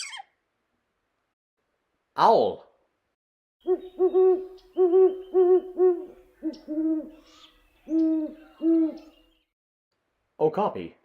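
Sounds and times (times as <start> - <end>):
owl hooting: 3.6 - 9.2.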